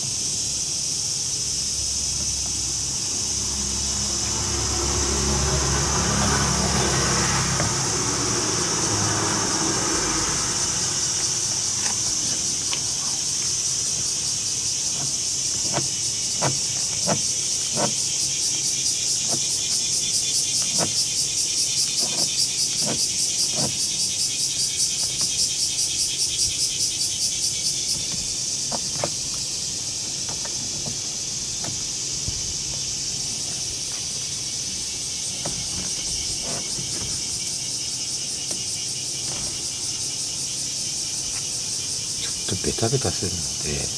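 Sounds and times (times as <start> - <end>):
insects chirring: 0.0 - 43.9
fast-pulsing insect call: 0.1 - 30.2.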